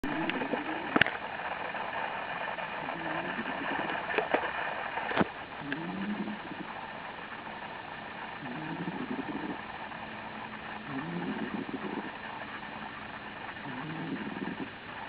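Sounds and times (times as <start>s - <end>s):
cat snoring: 0.0s - 1.0s, 2.8s - 3.9s, 5.6s - 6.7s, 8.4s - 9.6s, 10.9s - 12.2s, 13.6s - 14.8s
steady hiss: 0.0s - 15.0s.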